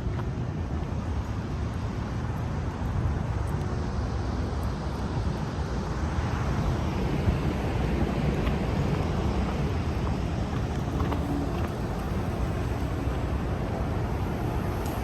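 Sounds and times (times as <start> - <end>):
road traffic: 4.3 - 15.0
wind buffeting microphone: 5.2 - 15.0.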